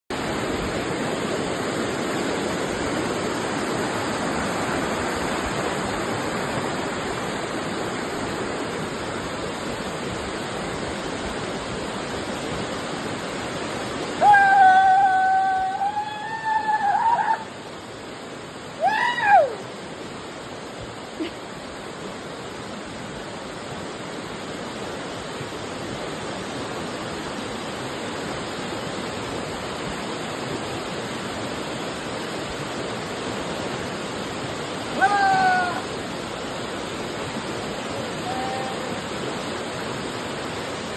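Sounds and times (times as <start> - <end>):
waterfall rushing: 0.1 - 40.9
person calling out: 34.9 - 35.9, 38.2 - 39.0.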